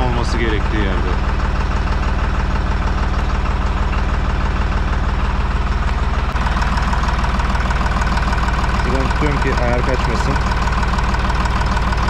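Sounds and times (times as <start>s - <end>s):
tractor diesel engine idling: 0.0s - 12.0s.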